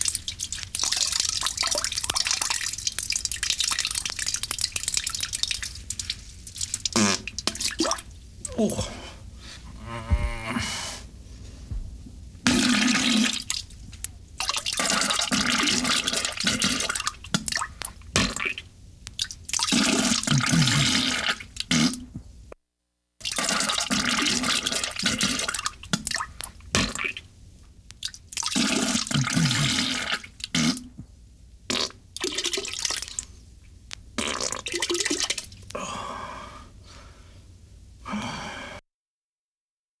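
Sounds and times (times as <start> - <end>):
wet sputtering fart bursts: 6.8 - 8.0, 9.8 - 10.9, 12.4 - 13.6, 14.4 - 18.7, 19.6 - 22.2, 23.2 - 27.3, 28.4 - 31.1, 31.7 - 33.2, 34.2 - 35.4.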